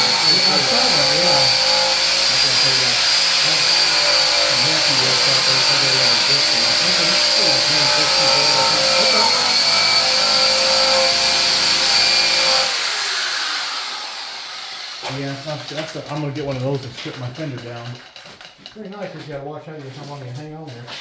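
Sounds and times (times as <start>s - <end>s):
rotary tool stripping metal: 0.0s - 13.2s
tool spinning down: 0.0s - 13.7s.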